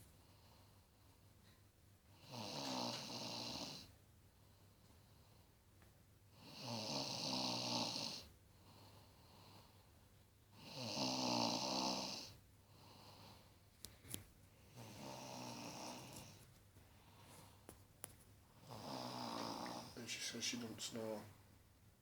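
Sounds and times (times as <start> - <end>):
quiet breaths: 0.0 - 22.0
woman snoring: 2.2 - 3.9, 6.4 - 8.3, 10.6 - 12.4, 14.7 - 16.4, 18.6 - 20.0.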